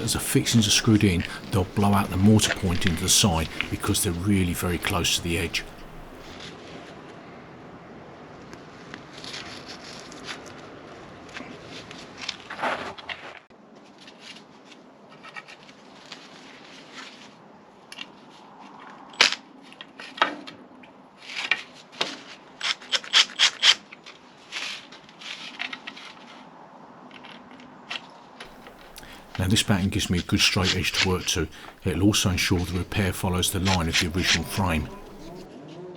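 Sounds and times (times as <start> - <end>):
wood scraping and rubbing: 0.0 - 6.3, 28.5 - 35.5.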